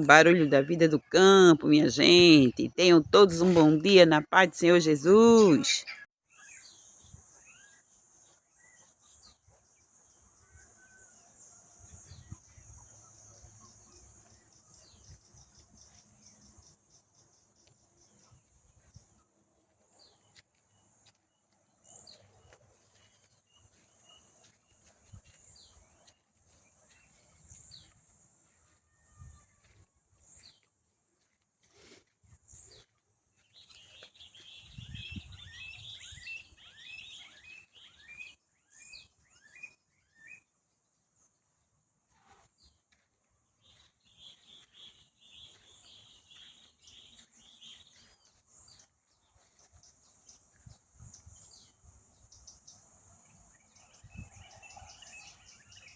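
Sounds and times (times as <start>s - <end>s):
bird chirps: 32.7s - 40.5s.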